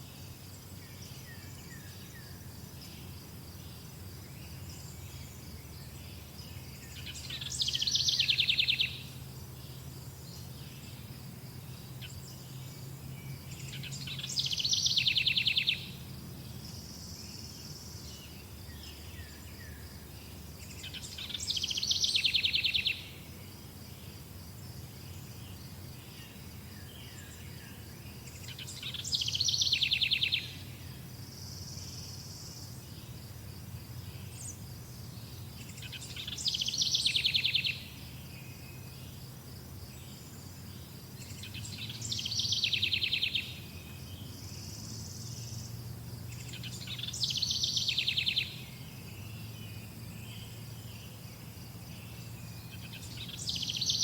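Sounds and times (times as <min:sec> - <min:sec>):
insects chirring: 0:00.2 - 0:54.0
songbird trilling: 0:06.8 - 0:09.2, 0:13.6 - 0:16.0, 0:28.3 - 0:30.6, 0:35.6 - 0:38.0, 0:41.2 - 0:43.6, 0:46.3 - 0:48.7, 0:52.1 - 0:54.0.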